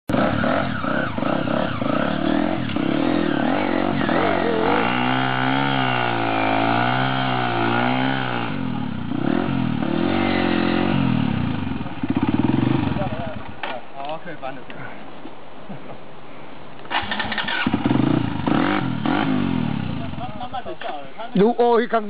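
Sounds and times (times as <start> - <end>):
motorcycle engine revving: 0.1 - 13.7, 16.9 - 20.8.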